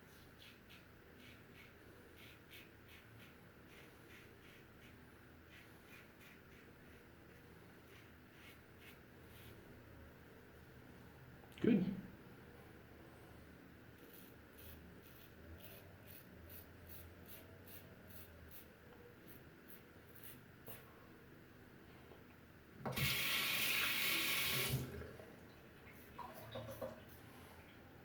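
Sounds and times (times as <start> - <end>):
tap running: 22.8 - 25.0.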